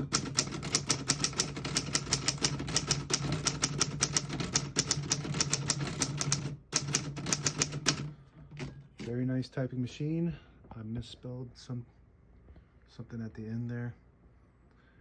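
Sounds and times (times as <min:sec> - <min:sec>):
typewriter key strikes: 0:00.0 - 0:08.7.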